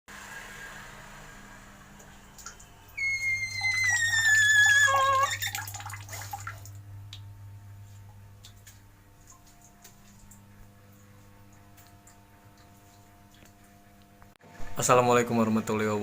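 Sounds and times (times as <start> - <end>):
water dripping and gurgling: 2.0 - 14.3
pipe whistling squeal: 2.9 - 5.8.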